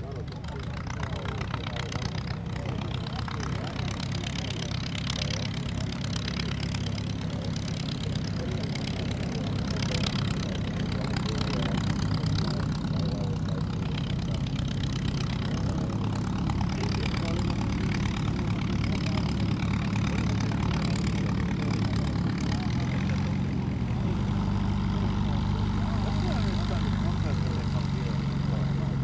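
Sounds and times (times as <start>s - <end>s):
piston engine droning: 0.0s - 29.0s.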